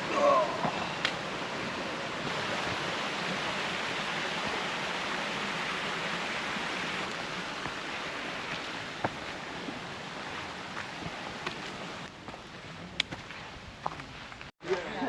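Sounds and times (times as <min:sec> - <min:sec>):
running water rushing: 0:00.0 - 0:12.1.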